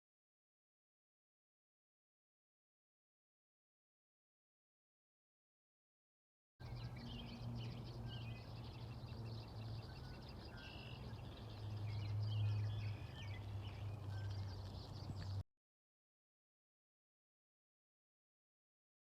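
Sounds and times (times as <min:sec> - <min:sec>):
birds chirping and singing: 0:06.6 - 0:15.4.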